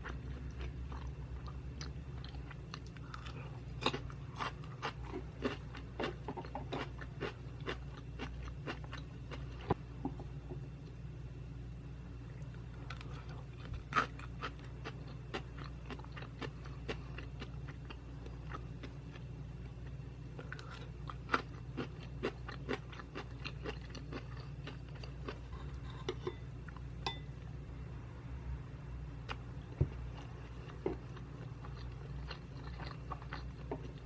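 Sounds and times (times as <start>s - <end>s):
steady low hum: 0.0s - 34.0s
close chewing with mouth clicks: 12.4s - 19.2s, 19.8s - 26.8s, 30.1s - 34.0s.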